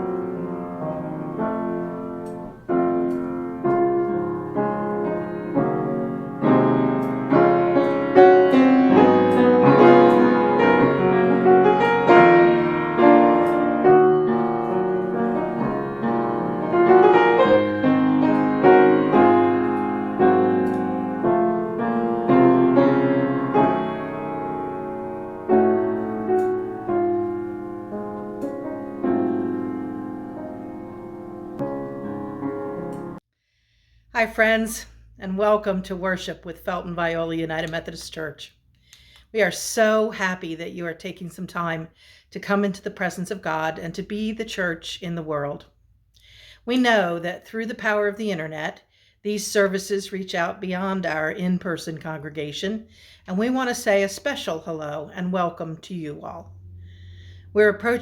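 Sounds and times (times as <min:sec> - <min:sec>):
piano music: 0:00.0 - 0:33.2, 0:56.3 - 0:58.0.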